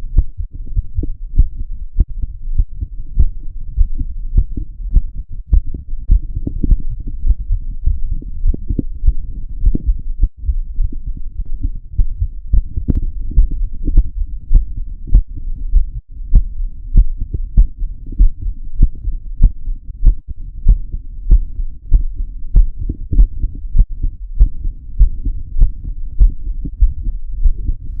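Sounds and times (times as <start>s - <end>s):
heartbeat: 0.0s - 28.0s
low rumble: 0.0s - 28.0s.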